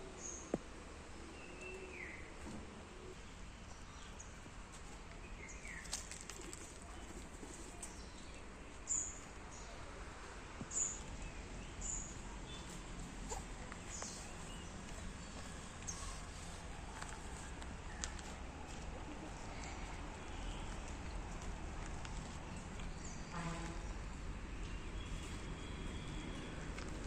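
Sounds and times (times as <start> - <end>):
outdoor background hiss: 0.0 - 27.0
birds chirping: 10.6 - 18.4.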